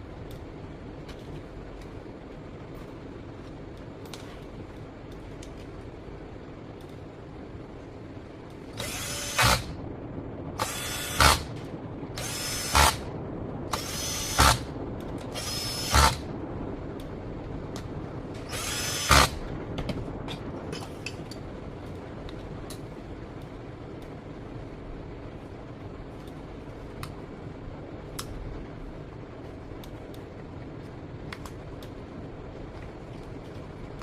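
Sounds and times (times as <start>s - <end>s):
power tool bursts: 8.8s - 9.8s, 10.6s - 11.5s, 12.2s - 13.0s, 13.7s - 14.7s, 15.3s - 16.2s, 18.4s - 19.4s.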